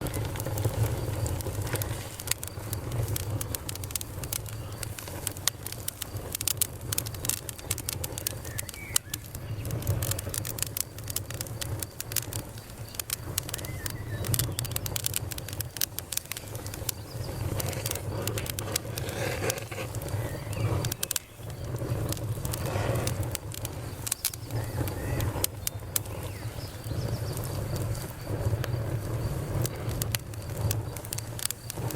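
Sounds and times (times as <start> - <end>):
campfire crackling and popping: 0.0 - 31.9
low fire rumble: 0.0 - 31.9.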